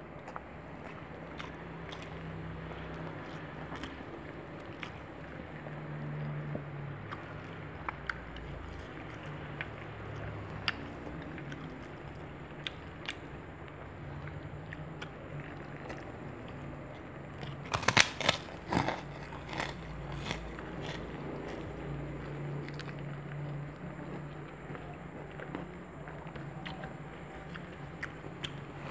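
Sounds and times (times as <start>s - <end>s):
chewing with small clicks: 0.0s - 28.9s
loud crunching: 17.4s - 21.7s.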